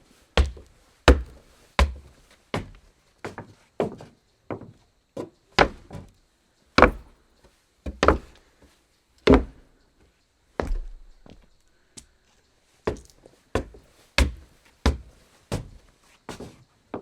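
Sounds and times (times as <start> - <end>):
footsteps on wood: 0.4 - 6.1, 6.8 - 7.1, 7.9 - 8.4, 9.3 - 9.6, 10.6 - 12.1, 12.9 - 17.0.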